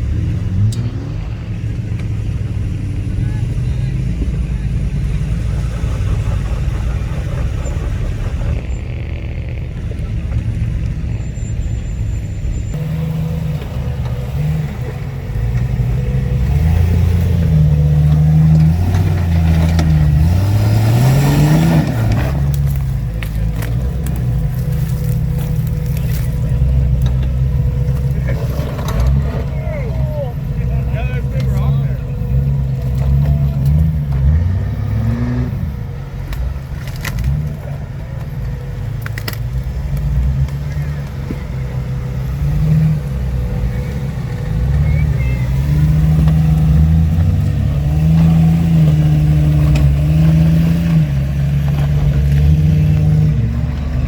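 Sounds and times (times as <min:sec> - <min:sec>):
off-road engine revving under load: 0:00.0 - 0:54.0.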